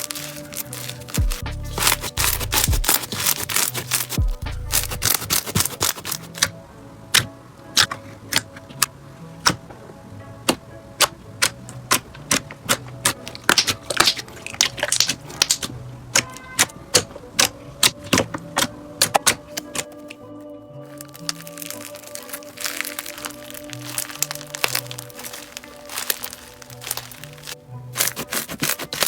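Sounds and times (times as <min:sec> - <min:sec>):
soft background music: 0:00.0 - 0:29.0
slime clicking and popping: 0:10.5 - 0:20.0, 0:21.0 - 0:29.0.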